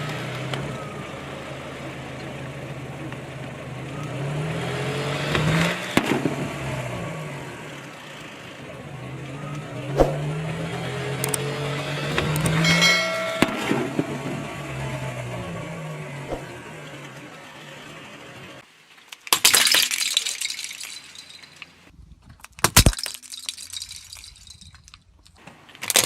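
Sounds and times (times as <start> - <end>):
car engine running: 0.0 - 18.6
sharp cracks: 19.0 - 26.0.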